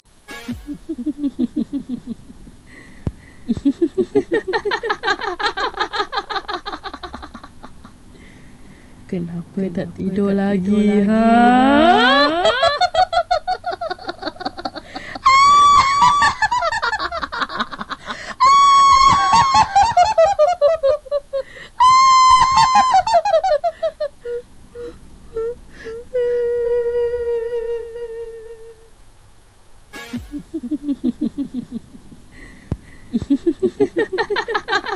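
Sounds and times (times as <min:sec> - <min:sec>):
eerie ghost laughter: 0:00.7 - 0:08.0, 0:11.4 - 0:25.0.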